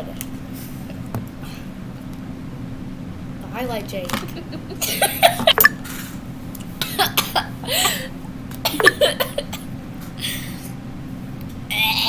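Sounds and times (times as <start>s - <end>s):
steady low hum: 0.0s - 12.0s
person coughing: 4.8s - 5.7s, 6.8s - 8.1s, 8.7s - 10.4s.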